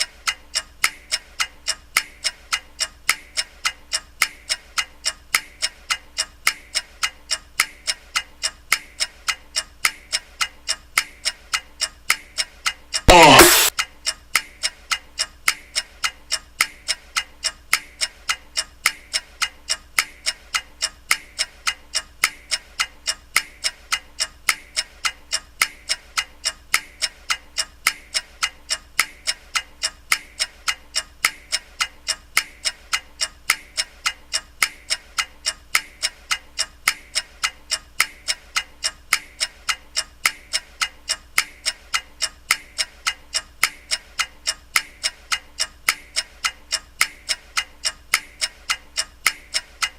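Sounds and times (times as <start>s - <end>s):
clock ticking: 0.0s - 49.9s.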